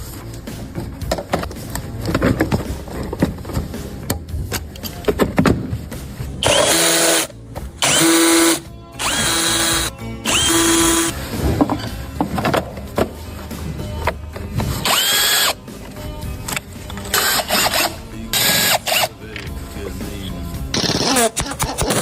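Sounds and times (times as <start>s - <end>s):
power drill whine: 6.4s - 11.1s, 14.8s - 15.6s, 17.1s - 19.1s.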